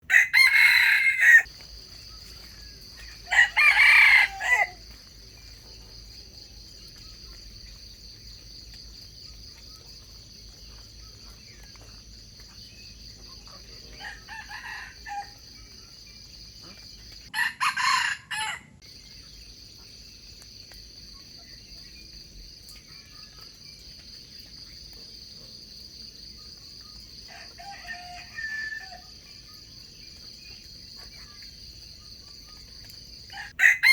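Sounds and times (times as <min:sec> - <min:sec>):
roosters crowing: 0:00.0 - 0:01.5, 0:03.0 - 0:04.9, 0:13.9 - 0:15.5, 0:17.3 - 0:18.8, 0:27.3 - 0:29.1, 0:33.3 - 0:33.9.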